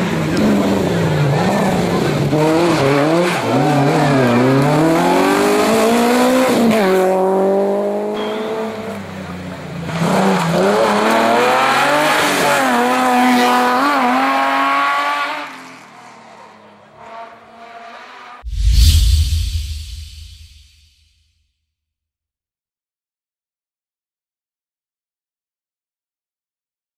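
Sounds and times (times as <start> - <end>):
car engine revving hard: 0.3 - 8.1.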